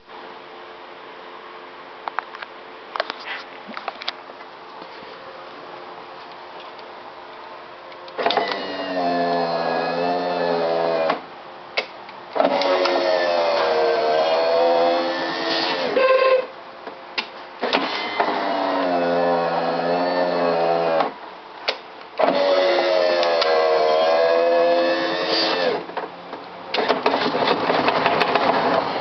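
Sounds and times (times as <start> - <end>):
power window motor whirring: 8.2 - 11.3, 12.4 - 16.4, 17.6 - 21.2, 22.2 - 25.9
motor stopping click: 22.2 - 23.6.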